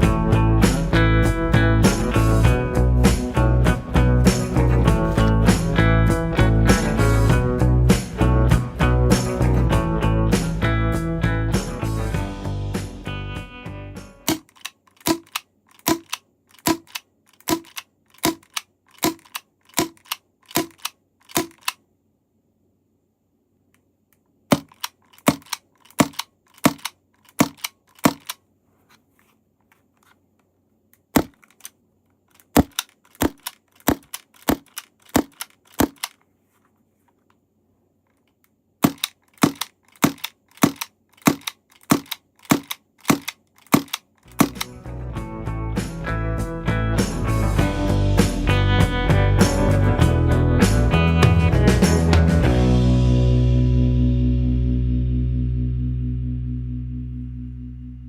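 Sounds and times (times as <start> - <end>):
airsoft pistol shots: 14.3 - 21.7, 38.8 - 44.6.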